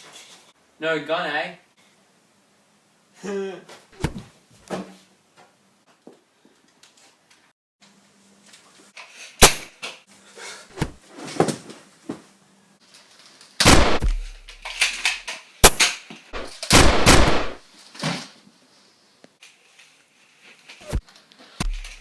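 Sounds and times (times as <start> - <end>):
single gunshots: 4.0 - 4.3, 9.4 - 9.7, 13.6 - 14.3, 15.6 - 17.6
rapid gunfire bursts: 13.6 - 14.1.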